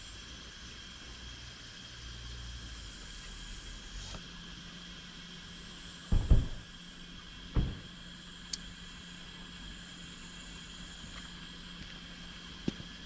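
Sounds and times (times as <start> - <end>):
outdoor hiss: 0.0 - 13.0
short low thumps: 6.1 - 6.7, 7.6 - 7.9.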